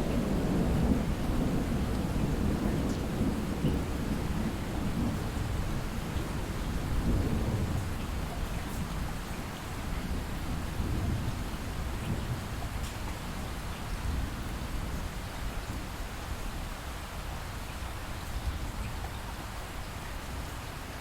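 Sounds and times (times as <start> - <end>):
distant thunder rumble: 0.0 - 15.0
light steady rain: 0.0 - 21.0.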